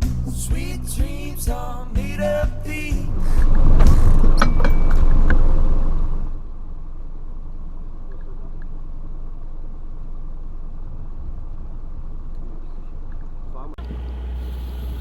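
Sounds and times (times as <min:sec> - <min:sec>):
music with a beat: 0:00.0 - 0:03.1
motorboat engine rumble: 0:13.8 - 0:15.0.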